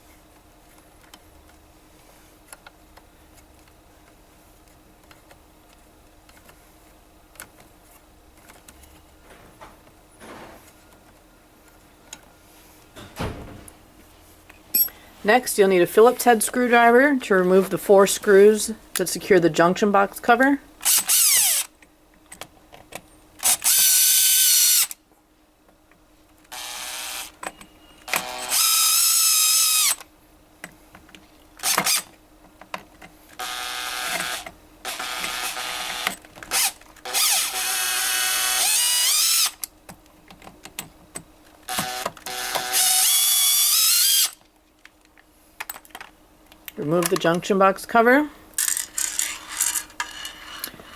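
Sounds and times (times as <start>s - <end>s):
power screwdriver whirring: 20.8s - 21.7s, 23.4s - 25.0s, 26.5s - 27.3s, 28.1s - 30.0s, 31.6s - 32.1s, 33.4s - 39.6s, 41.7s - 44.4s.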